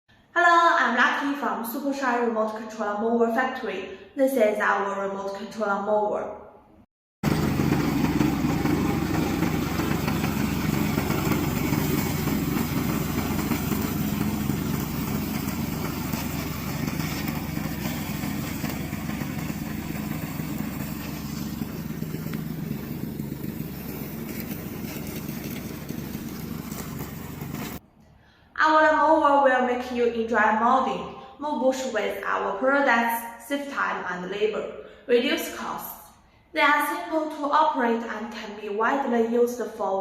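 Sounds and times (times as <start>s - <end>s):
mower engine running: 7.2s - 27.8s.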